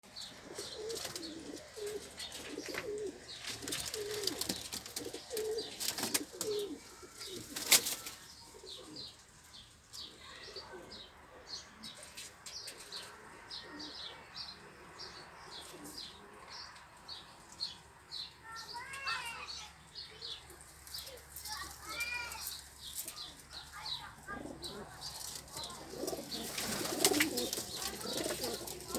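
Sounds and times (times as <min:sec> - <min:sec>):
pigeons cooing: 0:00.2 - 0:09.2, 0:12.6 - 0:16.6, 0:23.8 - 0:28.9
wings flapping: 0:03.5 - 0:06.6, 0:07.4 - 0:08.2, 0:25.6 - 0:28.9.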